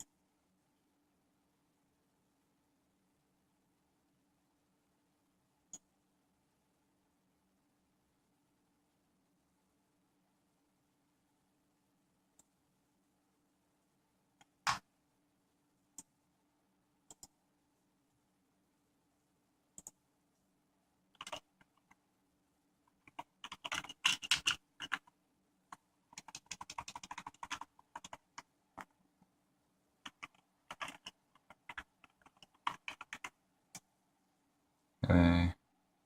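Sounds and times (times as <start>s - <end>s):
computer keyboard typing: 17.1s - 17.3s, 21.2s - 22.0s, 22.9s - 25.1s, 25.7s - 29.0s, 30.0s - 33.9s.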